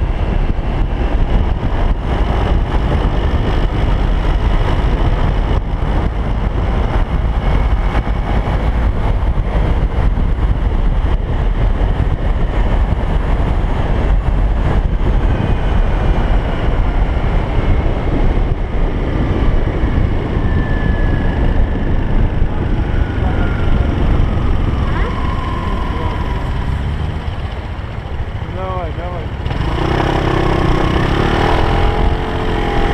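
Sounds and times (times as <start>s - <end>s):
vehicle engine and road noise: 0.0s - 32.9s.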